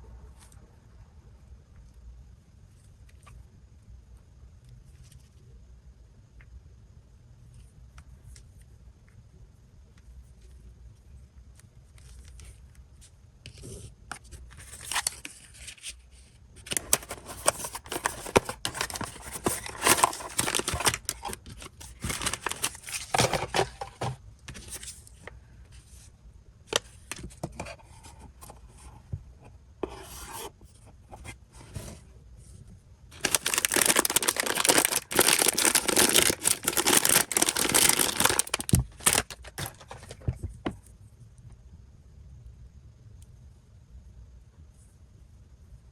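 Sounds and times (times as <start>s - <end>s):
packaging tearing and crinkling: 16.6s - 23.9s, 33.2s - 40.2s.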